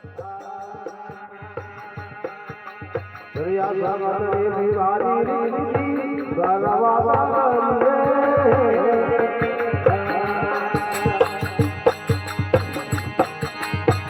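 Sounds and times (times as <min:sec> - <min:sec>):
hand drum beats: 0:04.3 - 0:14.0
wavering melody: 0:10.8 - 0:14.0.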